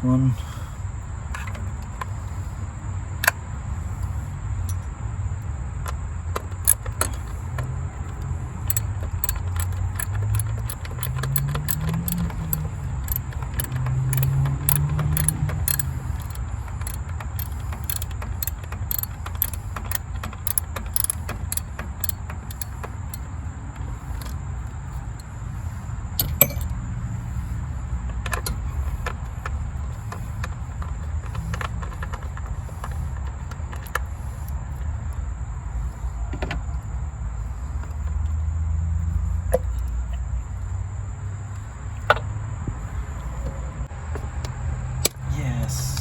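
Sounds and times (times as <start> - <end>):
ratchet clicking on bolts: 1.3 - 35.2.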